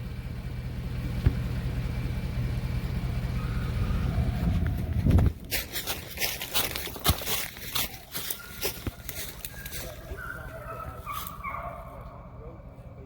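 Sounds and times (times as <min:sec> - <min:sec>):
vehicle engine humming: 0:00.0 - 0:13.0
sharp crackling and rustling: 0:04.3 - 0:12.1.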